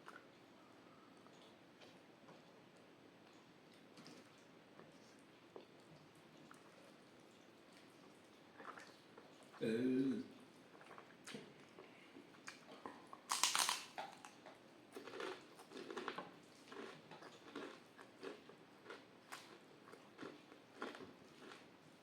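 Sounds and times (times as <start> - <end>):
person chewing food: 11.8 - 21.7
loud crunch: 13.3 - 14.3
wet mouth smacks: 13.3 - 14.3.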